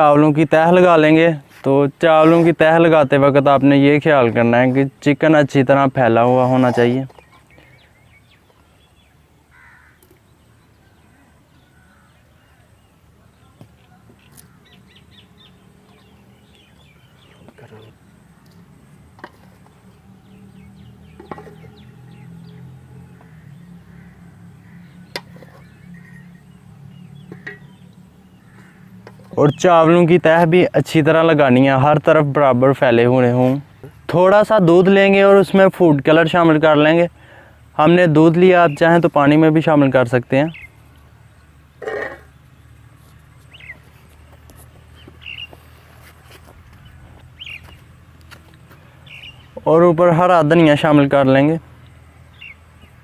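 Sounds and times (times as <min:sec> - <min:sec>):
high bird chirps: 0:44.9 - 0:45.6, 0:46.8 - 0:47.9, 0:49.0 - 0:49.7.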